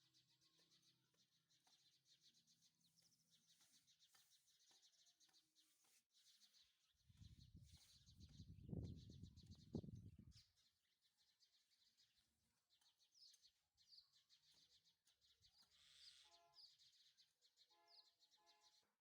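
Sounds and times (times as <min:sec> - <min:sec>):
faint birds chirping: 0:00.0 - 0:19.0
short pitched bird calls: 0:15.6 - 0:17.0.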